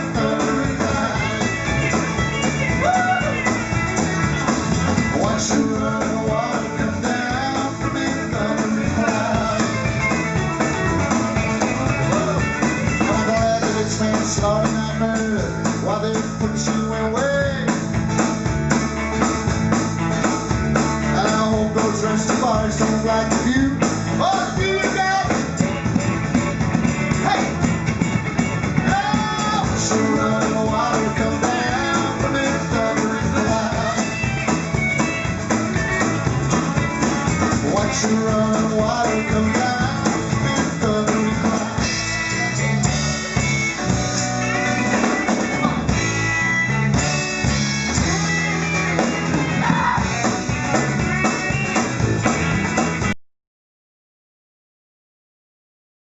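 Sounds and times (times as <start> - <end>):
electric guitar lead: 0.0 - 53.1
drums: 0.0 - 53.2
walking bass line: 0.0 - 53.2.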